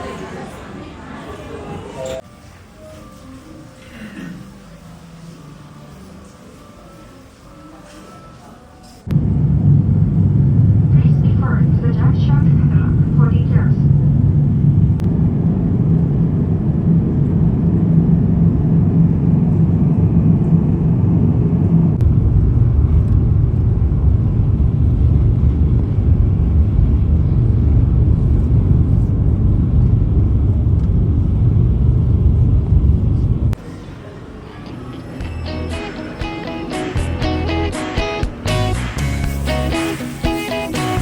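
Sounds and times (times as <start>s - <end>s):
low hum: 9.1s - 33.7s
vehicle rumble from inside: 13.8s - 33.6s.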